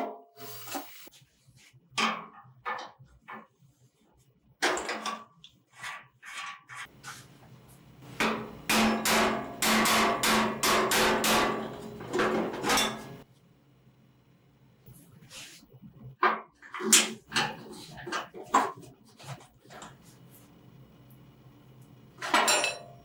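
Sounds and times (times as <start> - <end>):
hammer striking steel: 8.2 - 11.7.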